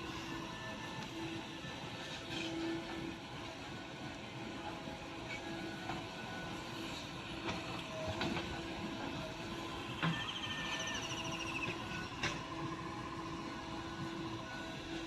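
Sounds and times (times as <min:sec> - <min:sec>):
high chattering squeak: 0:10.0 - 0:11.8.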